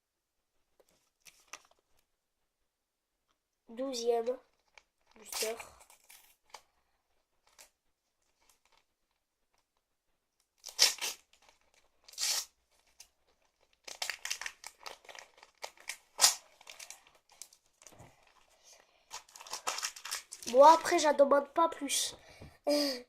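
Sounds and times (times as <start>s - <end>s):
wrapper crinkling: 0.8s - 2.0s, 4.4s - 6.6s, 7.4s - 9.7s, 10.6s - 21.1s
wrapper ripping: 4.5s - 6.6s, 7.4s - 9.6s, 10.6s - 18.5s, 19.1s - 21.0s.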